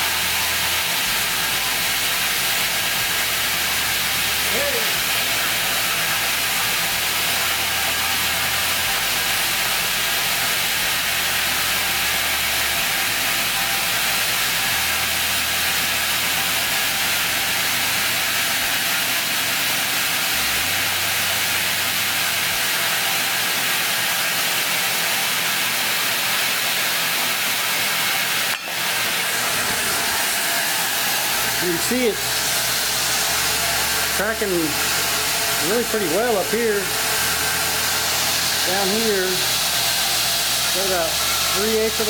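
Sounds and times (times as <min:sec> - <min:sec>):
belt grinder running: 0:00.0 - 0:42.0.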